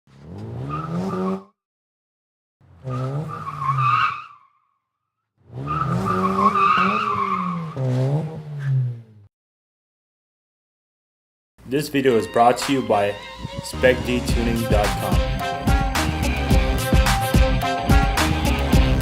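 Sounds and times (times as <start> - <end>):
car engine revving: 0.1 - 1.5, 2.6 - 4.0, 5.4 - 9.3, 13.3 - 19.0
tyres squealing: 5.6 - 8.8.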